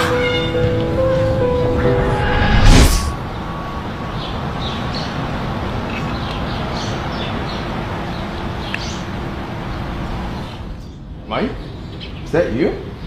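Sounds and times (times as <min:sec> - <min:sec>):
low rumble of distant traffic: 0:00.0 - 0:13.0
small birds chirping: 0:04.2 - 0:13.0.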